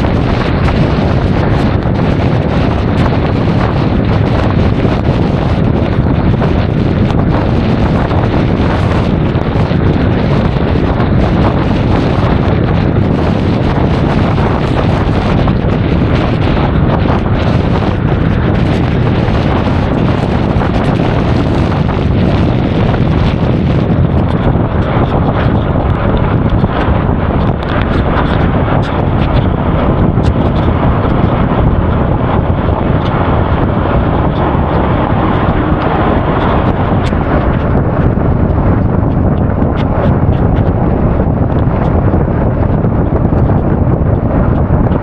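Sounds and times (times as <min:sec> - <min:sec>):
wind buffeting microphone: 0:00.0 - 0:45.0.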